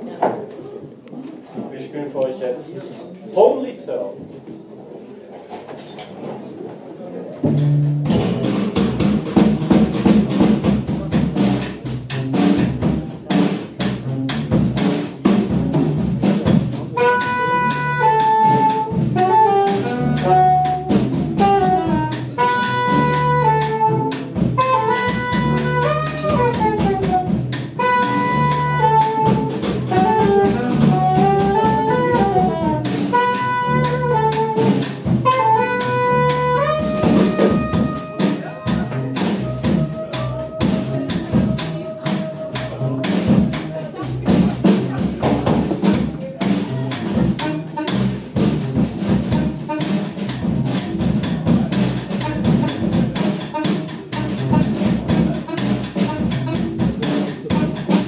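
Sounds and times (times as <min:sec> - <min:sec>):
drums: 0:05.5 - 0:58.0
low bass line: 0:07.4 - 0:58.0
saxophone melody: 0:16.8 - 0:44.2, 0:45.5 - 0:58.0.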